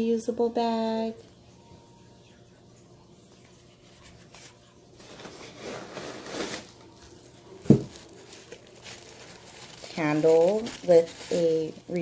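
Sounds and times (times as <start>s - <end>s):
packaging rustling: 4.1s - 12.0s.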